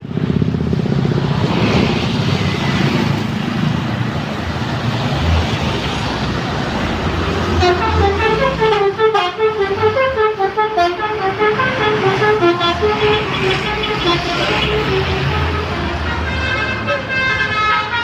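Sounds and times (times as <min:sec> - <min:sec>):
bus engine running: 0:00.0 - 0:17.9
road noise: 0:00.0 - 0:18.0
musical bus horn melody: 0:07.3 - 0:18.0.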